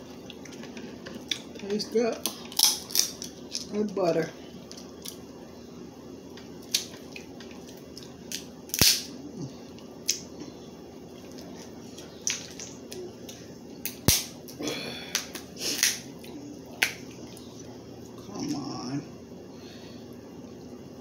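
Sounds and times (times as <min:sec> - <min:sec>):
crab shells cracking: 0:02.2 - 0:03.7, 0:06.6 - 0:09.1.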